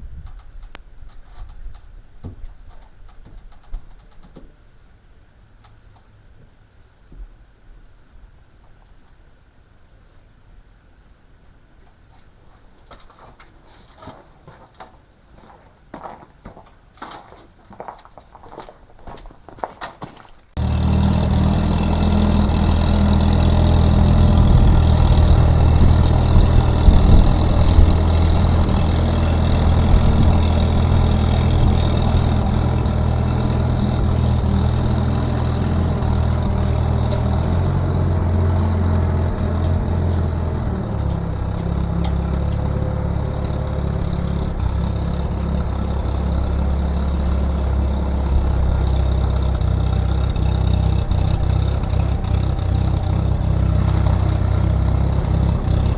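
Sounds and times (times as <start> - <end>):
engine idling: 20.6 - 55.9.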